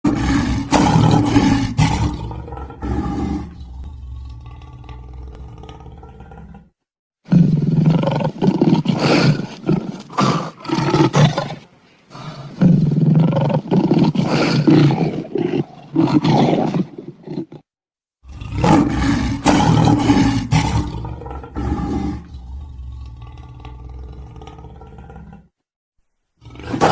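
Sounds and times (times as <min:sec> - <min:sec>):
lion roaring: 0:00.0 - 0:11.6, 0:18.2 - 0:25.6, 0:26.4 - 0:26.9.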